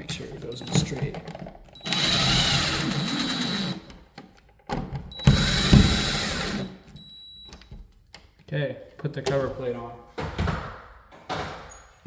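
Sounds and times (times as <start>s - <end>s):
power drill driving screws: 1.8s - 4.0s, 5.2s - 6.8s.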